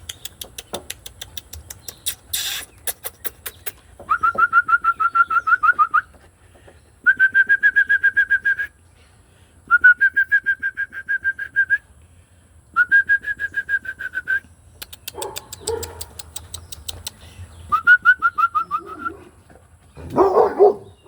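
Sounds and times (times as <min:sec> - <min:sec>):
songbird whistling rapid notes: 0:01.7 - 0:06.1, 0:17.5 - 0:19.2.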